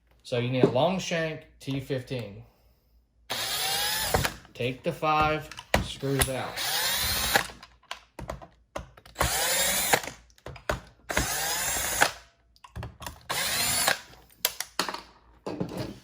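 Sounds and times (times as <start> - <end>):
power drill spinning: 3.3 - 4.5, 5.9 - 7.7, 9.1 - 10.2, 11.1 - 12.2, 13.2 - 14.3.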